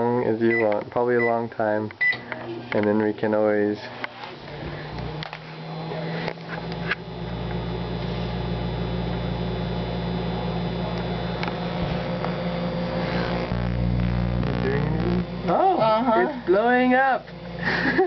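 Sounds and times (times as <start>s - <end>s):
microwave oven humming: 0.0s - 18.0s
microwave oven clicks: 0.5s - 3.1s.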